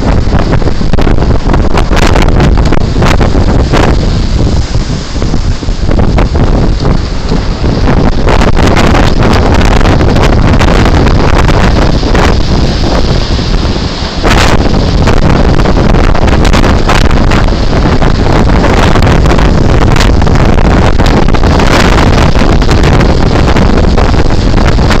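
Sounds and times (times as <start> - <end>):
strong wind on microphone: 0.0 - 25.0.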